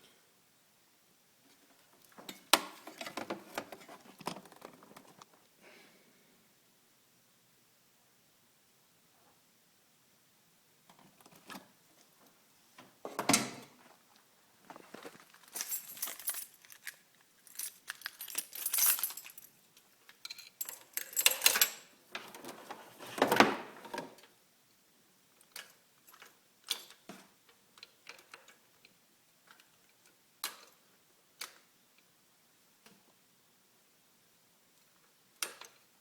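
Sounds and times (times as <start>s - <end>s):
keys jangling: 15.3s - 19.6s, 20.2s - 21.9s.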